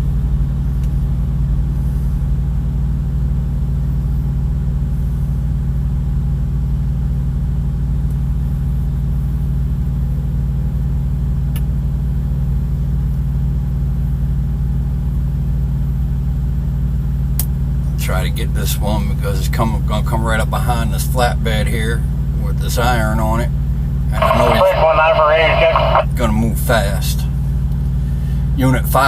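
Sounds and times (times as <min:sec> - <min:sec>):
diesel truck engine idling: 0:24.2 - 0:26.1.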